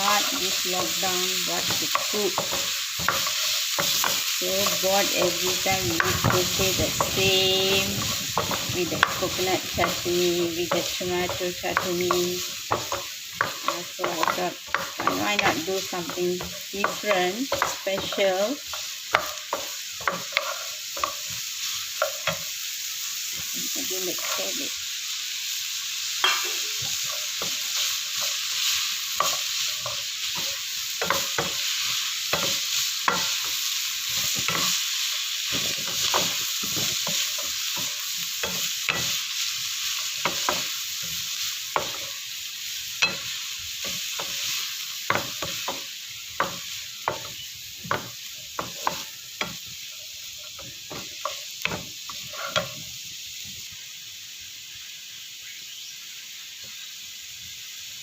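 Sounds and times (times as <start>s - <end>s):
spatula scraping a pan: 0.0s - 22.5s, 43.0s - 52.9s
vegetables sizzling in a pan: 0.0s - 58.0s.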